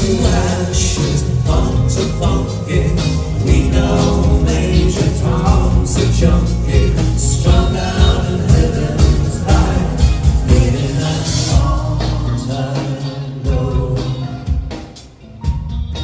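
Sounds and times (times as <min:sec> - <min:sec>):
voices singing: 0:00.0 - 0:15.1
live band playing: 0:00.0 - 0:16.0.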